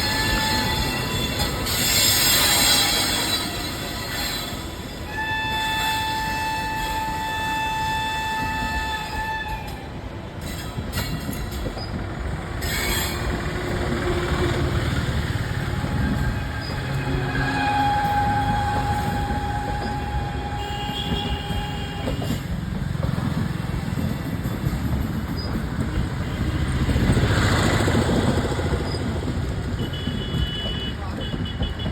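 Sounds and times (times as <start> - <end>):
locomotive horn blast: 0.0 - 4.0, 5.0 - 10.1, 12.8 - 22.5
train rumble and wheel noise: 0.0 - 31.9.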